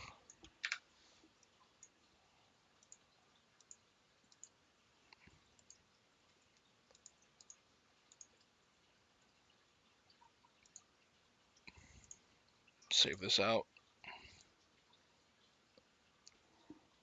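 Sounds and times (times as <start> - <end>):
faint computer mouse clicks: 2.8 - 3.0, 3.6 - 5.8, 6.6 - 8.5, 10.6 - 10.9.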